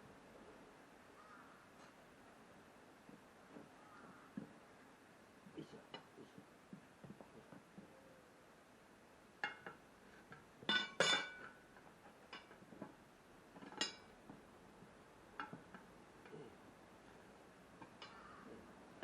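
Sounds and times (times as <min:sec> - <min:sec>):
metal clinking and knocking: 0:10.6 - 0:13.0, 0:13.6 - 0:14.4.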